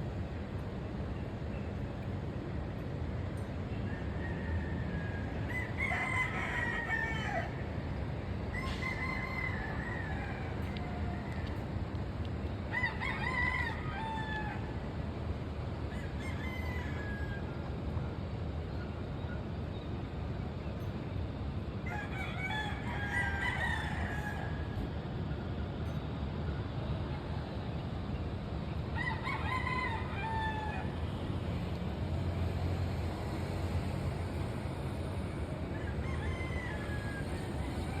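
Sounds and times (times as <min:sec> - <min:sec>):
roosters crowing: 0:03.7 - 0:11.9, 0:12.5 - 0:15.1, 0:15.7 - 0:17.8, 0:21.8 - 0:25.6, 0:28.6 - 0:38.0.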